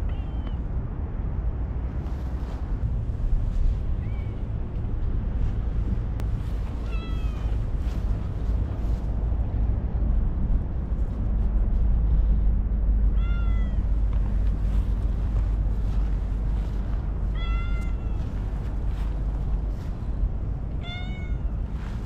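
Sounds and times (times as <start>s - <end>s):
steady low rumble: 0.0s - 22.0s
cat meowing: 6.8s - 7.6s, 13.1s - 13.8s, 17.3s - 18.3s, 20.7s - 21.6s.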